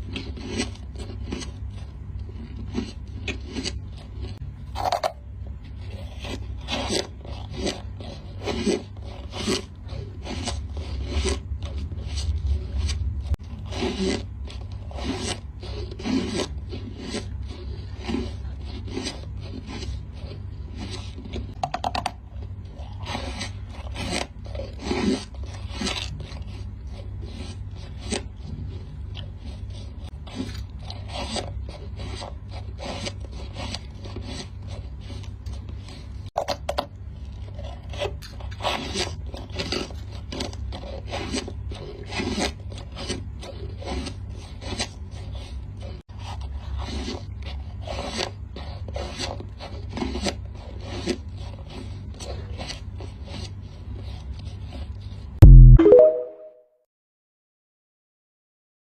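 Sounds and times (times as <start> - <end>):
scraping and rubbing strokes: 0.0 - 21.6, 22.4 - 36.3, 37.2 - 55.5
steady low hum: 0.7 - 20.7.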